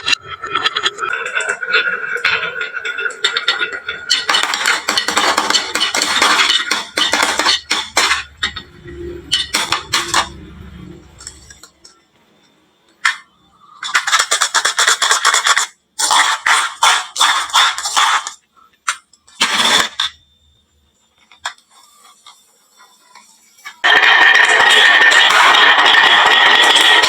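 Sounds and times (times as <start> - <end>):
marbles clattering on wood: 1.4 - 8.3, 23.9 - 27.0.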